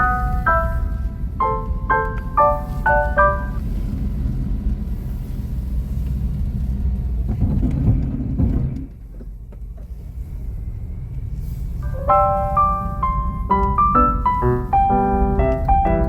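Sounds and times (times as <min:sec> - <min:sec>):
tyre noise on snowy road: 0:00.2 - 0:11.8.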